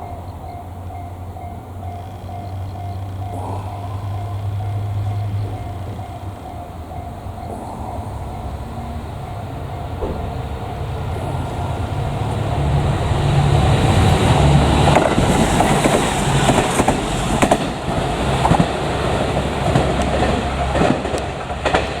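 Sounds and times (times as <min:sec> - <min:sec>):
diesel engine drone: 0:00.0 - 0:22.0
train wheels clacking over rail joints: 0:00.0 - 0:22.0.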